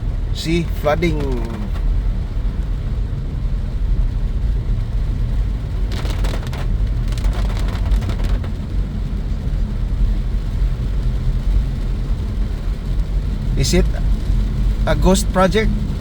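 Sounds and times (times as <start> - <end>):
slow road traffic rumble: 0.0 - 16.0
sharp clicks and hiss: 5.8 - 8.8.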